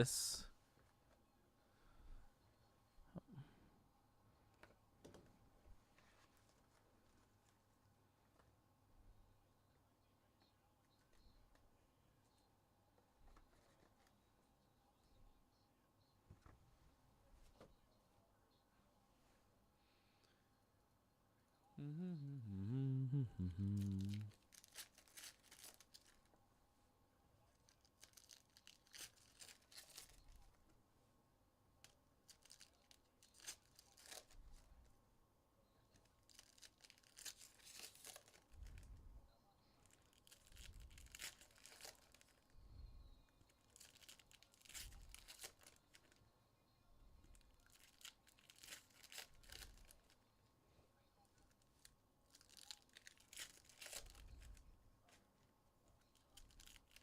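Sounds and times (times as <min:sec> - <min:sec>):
wrappers tearing and crinkling: 0:23.8 - 0:26.3, 0:27.5 - 0:30.6, 0:31.8 - 0:34.4, 0:36.0 - 0:38.8, 0:39.8 - 0:42.5, 0:43.6 - 0:46.2, 0:47.3 - 0:50.2, 0:51.5 - 0:54.5, 0:56.1 - 0:57.0.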